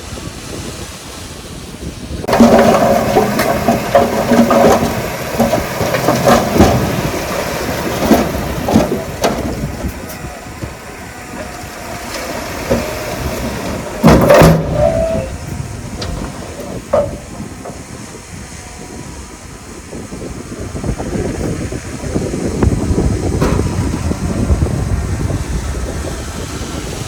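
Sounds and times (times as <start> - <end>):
low machine rumble: 2.2 - 27.0
brief squeal: 14.6 - 15.4.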